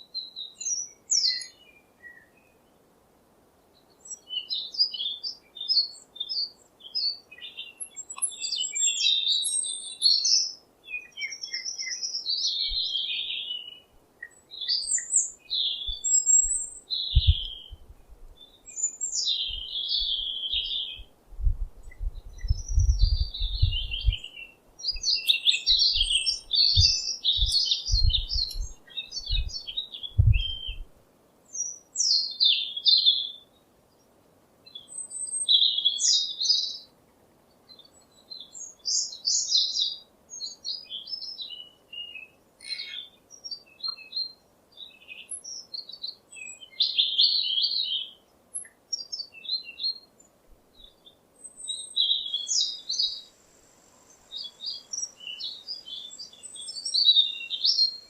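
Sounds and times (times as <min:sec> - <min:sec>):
songbirds chirping: 0:00.0 - 0:58.0
dull low thumps: 0:21.3 - 0:24.3, 0:26.8 - 0:28.7, 0:30.2 - 0:30.9.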